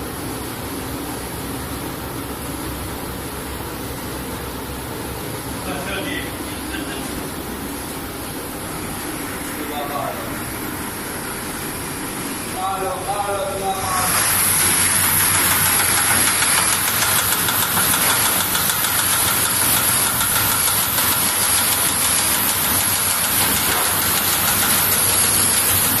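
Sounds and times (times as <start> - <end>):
machinery hissing: 8.1 - 26.0
rapid mechanical ticking: 14.4 - 26.0.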